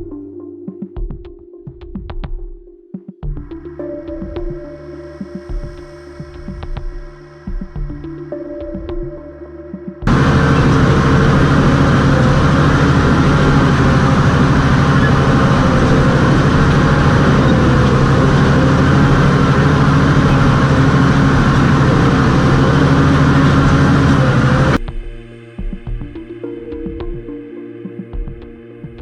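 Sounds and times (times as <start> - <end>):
bulldozer diesel engine drone: 10.1 - 24.8.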